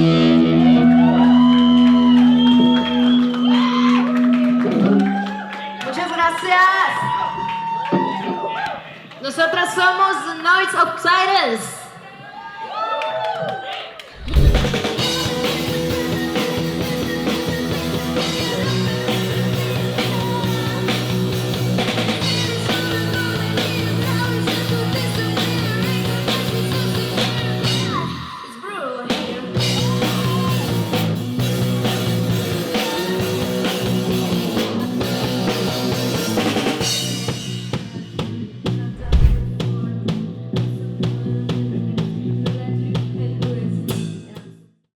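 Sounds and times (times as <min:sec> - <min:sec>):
evenly spaced drum hits: 0:14.2 - 0:15.0
rock music with drums and bass: 0:14.2 - 0:28.2, 0:29.4 - 0:38.4.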